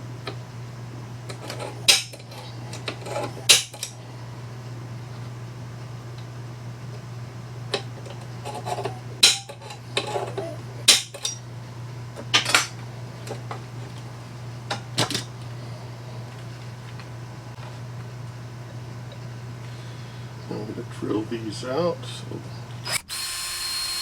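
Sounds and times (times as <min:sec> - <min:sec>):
metal parts clinking: 0:12.3 - 0:12.8.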